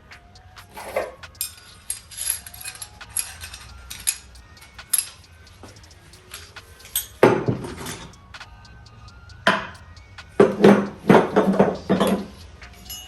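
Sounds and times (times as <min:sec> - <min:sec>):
metal parts knocking and clunking: 0:00.6 - 0:08.1, 0:10.4 - 0:13.0.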